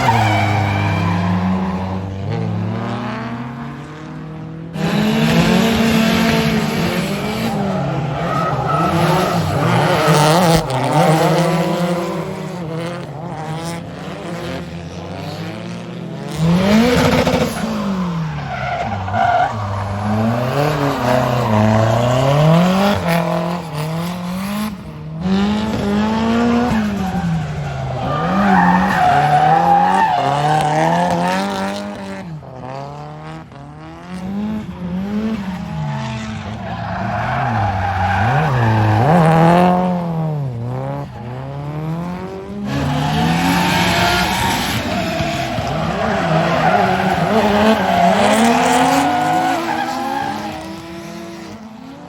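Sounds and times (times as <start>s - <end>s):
car engines revving: 0.0s - 52.0s
tyres screeching: 27.0s - 30.6s.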